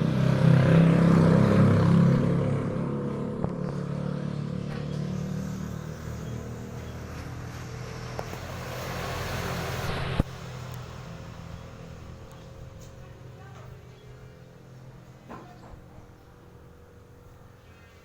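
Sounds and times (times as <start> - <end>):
rushing noise: 7.7 - 12.2.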